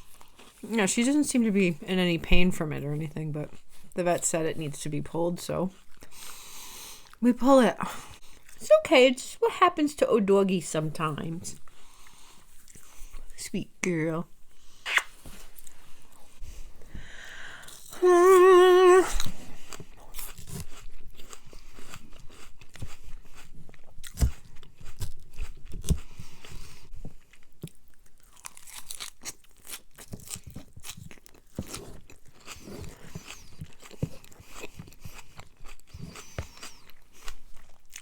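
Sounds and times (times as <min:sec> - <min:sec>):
person chewing and biting food: 0:14.6 - 0:16.9, 0:17.6 - 0:38.0
wavering voice-like sound: 0:18.0 - 0:19.2.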